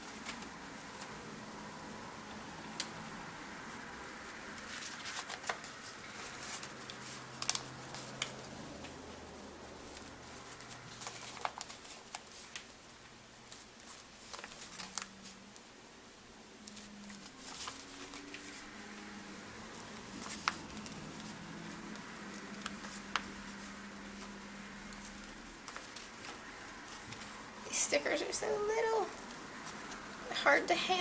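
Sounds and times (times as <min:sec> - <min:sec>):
paper rustling: 0:00.0 - 0:01.3, 0:03.7 - 0:15.7, 0:16.6 - 0:27.5.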